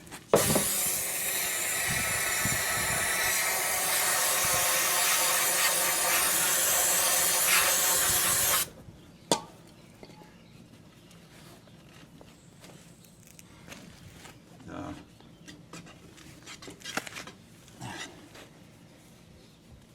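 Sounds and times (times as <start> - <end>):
aerosol spray hiss: 0.4 - 8.7.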